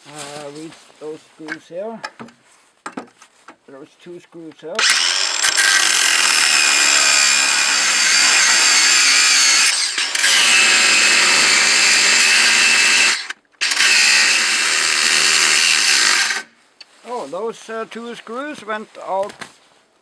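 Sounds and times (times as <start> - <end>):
power drill backing out screws: 4.8 - 16.5.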